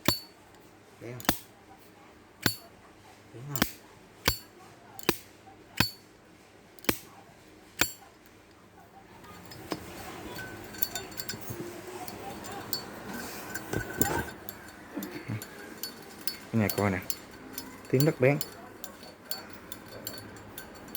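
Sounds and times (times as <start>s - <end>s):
lighter lid metallic clinks: 3.6s - 5.2s.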